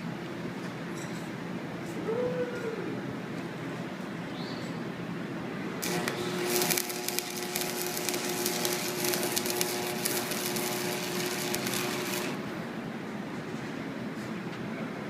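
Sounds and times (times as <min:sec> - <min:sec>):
welding arc crackling: 0:05.8 - 0:12.6
steady hum: 0:05.8 - 0:13.2.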